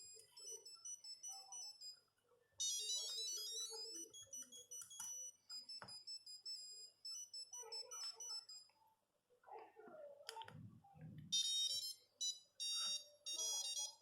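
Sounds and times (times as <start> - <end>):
phone ringtone beeping: 0.0 - 2.0, 2.6 - 8.7, 11.3 - 14.0.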